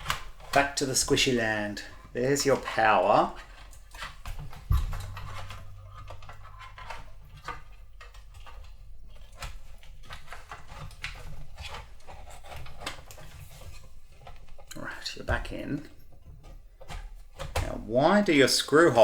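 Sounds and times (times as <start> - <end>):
metal and plastic clattering: 0.0 - 19.0
knock: 4.7 - 6.6.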